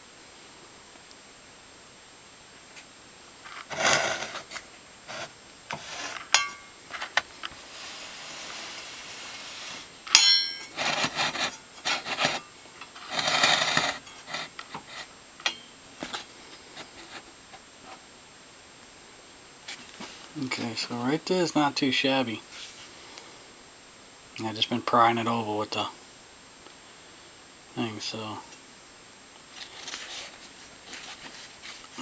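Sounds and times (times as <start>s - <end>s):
metal parts scraping: 3.5s - 16.2s
sharp metallic clinks: 10.1s - 10.8s.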